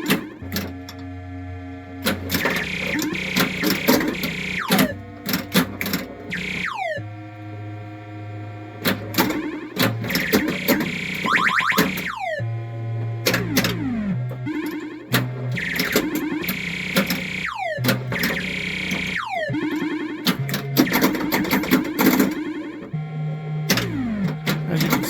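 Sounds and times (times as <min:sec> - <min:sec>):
pinball mechanism clicks and knocks: 0:00.0 - 0:07.8, 0:08.6 - 0:25.0
electronic pinball tones: 0:00.0 - 0:25.0
steady electronic drone: 0:09.5 - 0:25.0.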